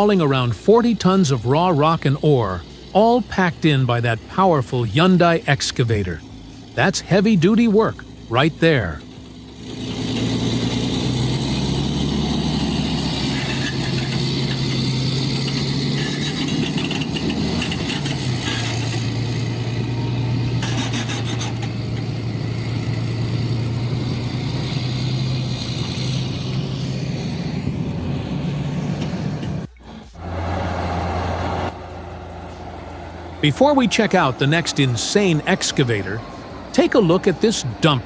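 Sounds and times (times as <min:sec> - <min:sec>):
heavy diesel engine running: 0:00.0 - 0:38.0
rattle of clicks: 0:13.2 - 0:19.6.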